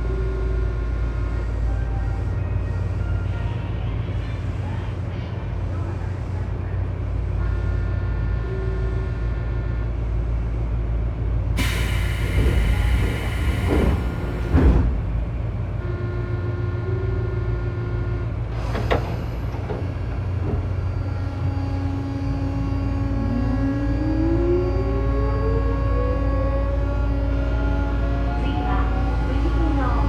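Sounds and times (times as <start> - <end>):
train equipment low drone: 0.0 - 30.0
compressed air hiss: 11.6 - 14.7
thump: 12.2 - 15.3.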